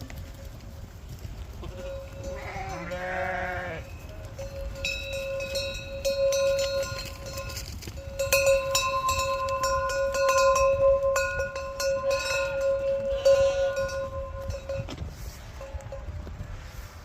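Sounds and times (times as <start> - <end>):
sheep bells clanking: 1.2 - 16.3
sheep bleating: 1.6 - 4.0.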